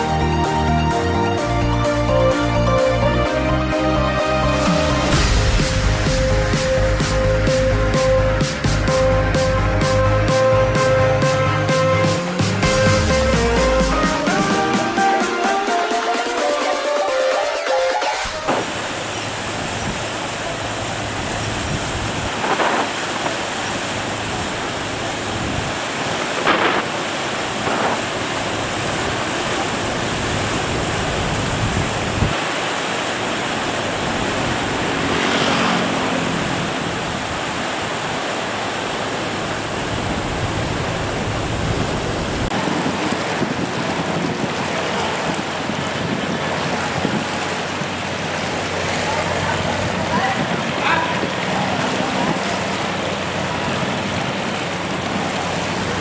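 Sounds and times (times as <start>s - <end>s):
boat engine humming: 0.0s - 56.0s
moving water: 0.0s - 56.0s
wind on microphone: 21.0s - 32.5s, 39.3s - 48.2s.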